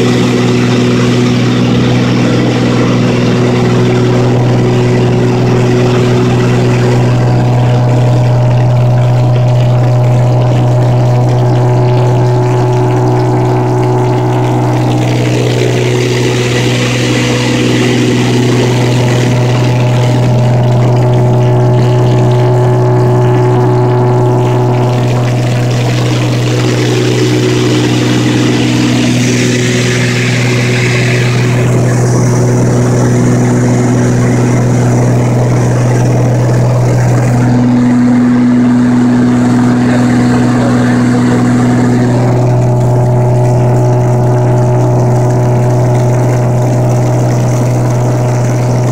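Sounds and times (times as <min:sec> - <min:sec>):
propeller aircraft droning: 0:00.0 - 0:48.9.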